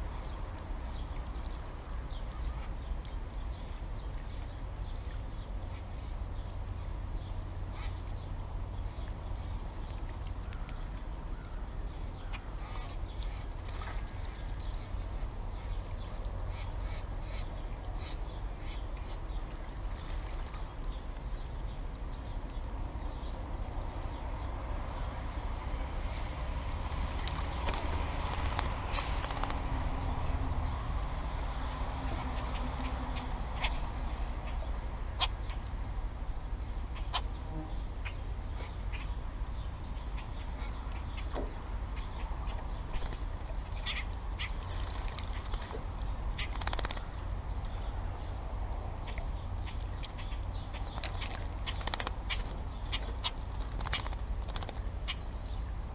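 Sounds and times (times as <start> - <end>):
birds harsh calls: 7.6 - 9.6, 32.1 - 35.8, 36.8 - 47.9.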